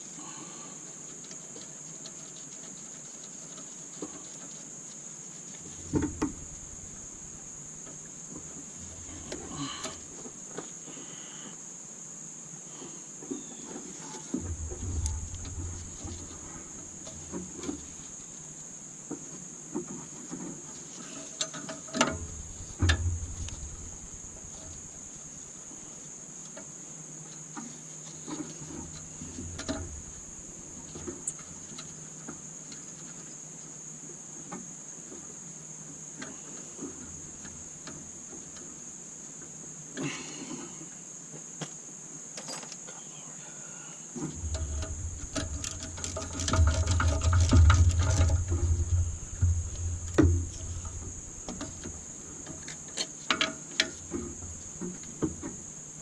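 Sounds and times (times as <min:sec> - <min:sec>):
tools and engine parts clinking: 0:42.4 - 0:42.8, 0:44.4 - 0:55.5.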